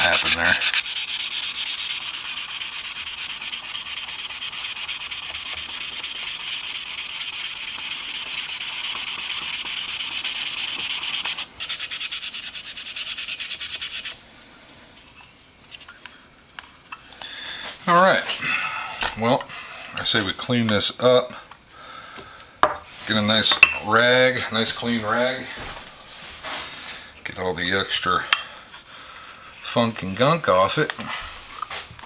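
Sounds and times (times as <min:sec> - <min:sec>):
sandpaper rubbing on metal: 0:00.0 - 0:14.2, 0:29.5 - 0:30.9.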